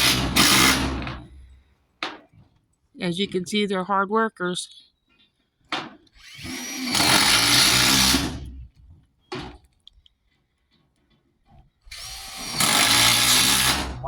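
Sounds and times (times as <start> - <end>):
power tool spinning up: 6.2 - 8.6.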